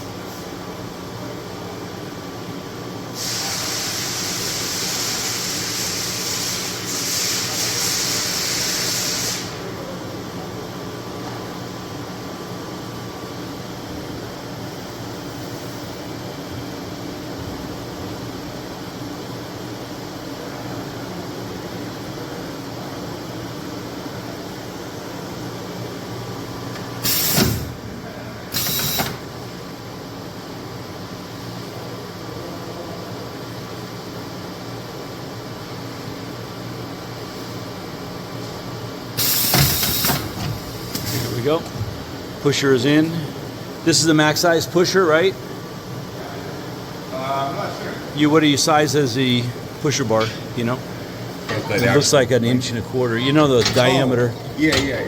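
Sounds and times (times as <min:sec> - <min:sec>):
loud hissing bursts: 0:03.2 - 0:09.7, 0:27.0 - 0:27.8, 0:39.2 - 0:41.5
machine running hum: 0:22.6 - 0:30.7
lathe hissing: 0:28.5 - 0:29.3, 0:39.2 - 0:42.2.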